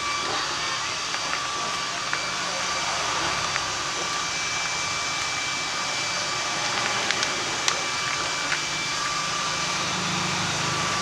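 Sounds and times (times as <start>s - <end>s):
machine whirring with high whine: 0.0s - 11.0s
faint clicks and taps: 6.6s - 8.7s.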